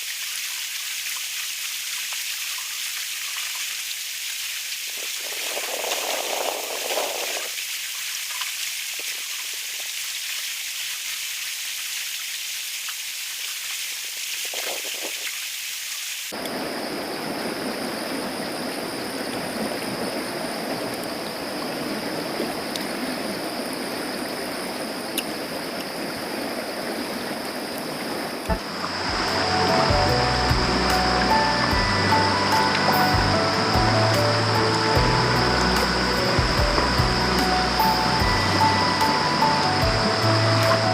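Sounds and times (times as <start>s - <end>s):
rain pattering: 0.0s - 15.4s, 16.3s - 40.9s
river rushing: 4.4s - 9.7s, 16.3s - 40.9s
thin high tone: 28.5s - 40.9s.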